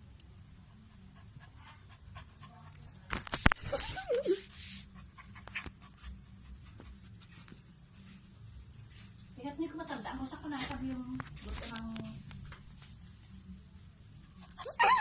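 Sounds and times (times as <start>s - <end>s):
dog panting: 0.5s - 3.1s, 3.7s - 7.7s
dog whining: 3.6s - 4.5s, 14.6s - 15.0s.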